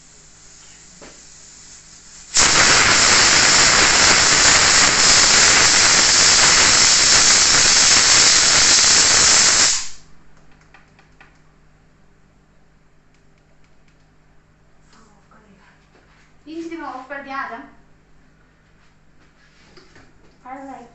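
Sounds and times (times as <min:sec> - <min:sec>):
steam hissing from valve: 0:00.0 - 0:10.0
pressure cooker whistle: 0:02.3 - 0:10.0.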